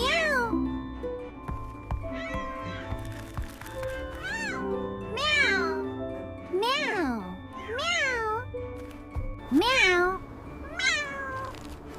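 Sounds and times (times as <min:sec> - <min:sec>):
soft background music: 0:00.0 - 0:11.9
cartoon cats meowing: 0:04.2 - 0:05.9, 0:06.6 - 0:08.4.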